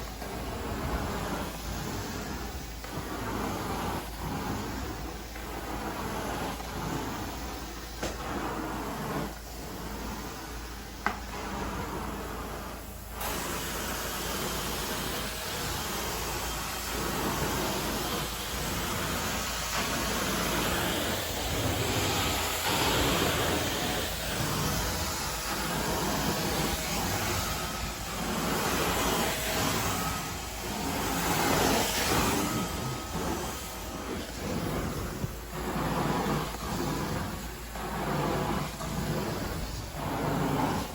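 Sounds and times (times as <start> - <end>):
carpet cleaning machine running: 0.0 - 40.9.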